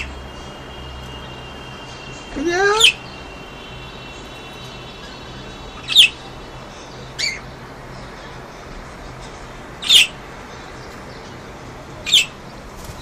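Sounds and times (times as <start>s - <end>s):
budgerigars squawking calls: 2.4s - 3.2s, 5.0s - 6.3s, 7.2s - 7.5s, 9.8s - 10.2s, 12.0s - 12.4s.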